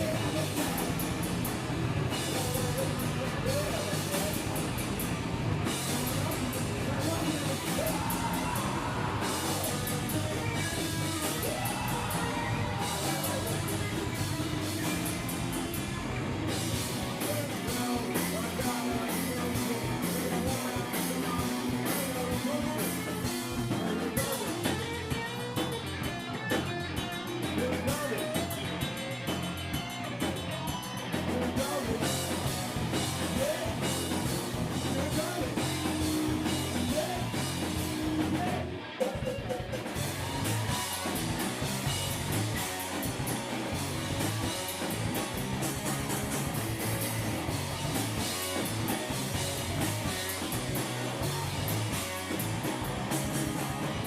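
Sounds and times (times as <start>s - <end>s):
live rock band playing: 0.0s - 54.0s
person singing: 6.8s - 14.0s, 17.0s - 24.9s, 31.4s - 32.3s, 34.8s - 38.7s.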